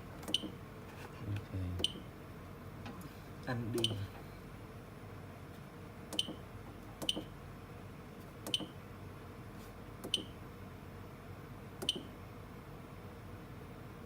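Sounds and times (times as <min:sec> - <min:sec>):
keypad click with high beep: 0:11.8 - 0:12.1.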